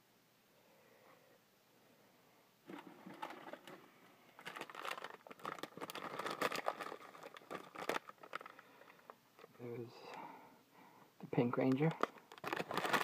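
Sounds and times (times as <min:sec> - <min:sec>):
toy packaging crinkling and clicking: 0:02.7 - 0:03.8, 0:04.4 - 0:09.6, 0:11.6 - 0:13.0.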